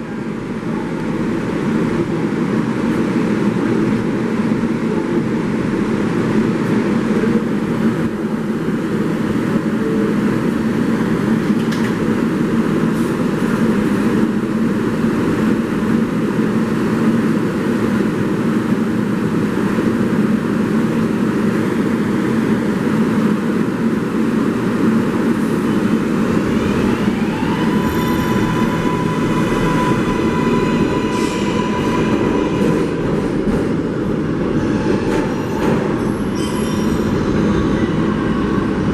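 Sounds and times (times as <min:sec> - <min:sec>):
subway train wheels rumbling on rail: 0:00.0 - 0:38.9
high wheel squeal: 0:27.0 - 0:32.9, 0:35.1 - 0:38.7.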